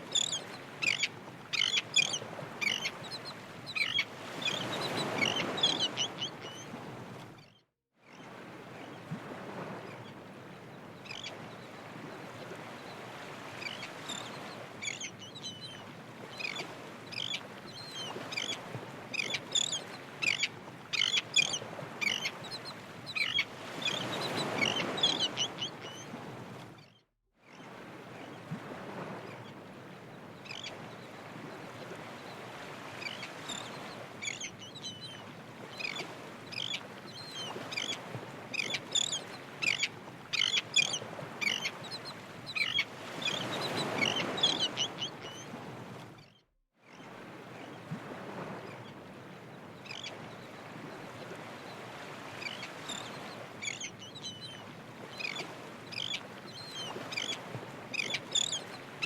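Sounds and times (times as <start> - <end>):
birds calling: 0.1 - 6.6, 19.2 - 25.8, 35.8 - 45.4, 52.4 - 59.0.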